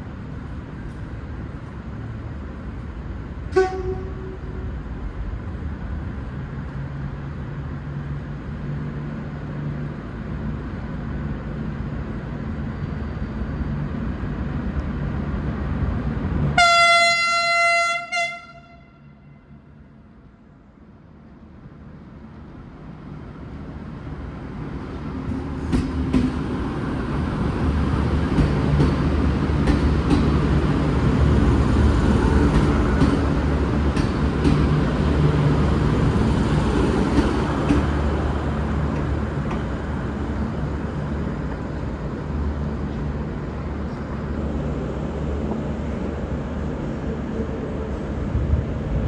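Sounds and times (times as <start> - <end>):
diesel train engine drone: 0.0 - 49.0.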